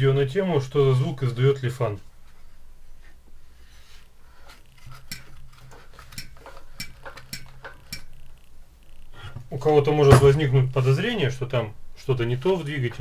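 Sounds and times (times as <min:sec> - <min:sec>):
sharp metallic valve clicks: 0:06.2 - 0:08.2.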